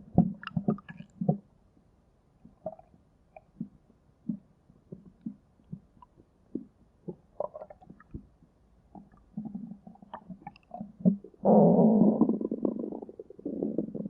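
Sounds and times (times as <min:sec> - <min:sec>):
stomach growling: 0:02.5 - 0:08.3, 0:08.9 - 0:14.0.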